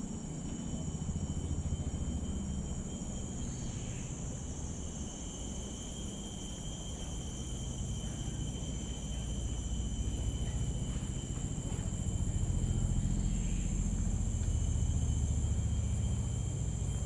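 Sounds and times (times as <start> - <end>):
forest insects chorus: 0.0 - 17.0
constant low rumble: 6.8 - 17.0.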